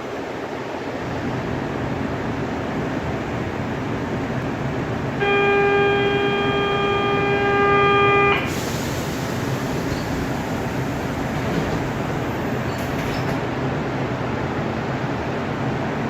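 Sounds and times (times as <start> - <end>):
train car running noise: 0.0 - 16.0
steady signal tone: 5.2 - 8.5.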